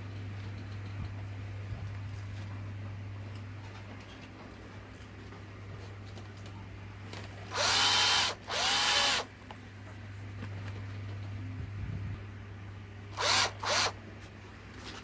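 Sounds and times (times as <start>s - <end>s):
cordless drill whining: 7.5s - 9.3s, 13.2s - 14.0s.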